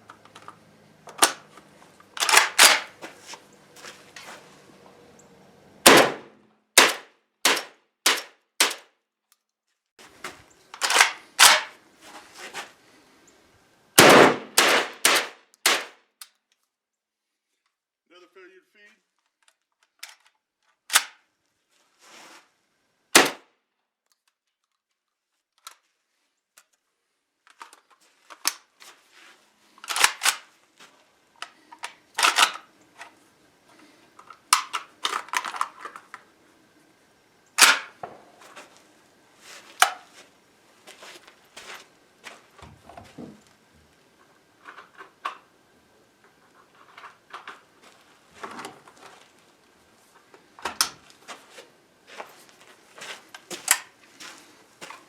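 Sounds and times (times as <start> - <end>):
gun handling clicks and clatter: 0.0 - 3.4, 6.8 - 11.8, 14.2 - 16.8, 19.2 - 21.3, 24.0 - 29.0, 29.7 - 33.2, 34.1 - 36.3, 37.6 - 38.7, 39.7 - 40.2, 44.1 - 45.6, 46.2 - 49.3, 50.2 - 51.2, 53.0 - 54.0
shotgun firing: 5.8 - 8.8, 14.0 - 15.9, 23.2 - 23.4.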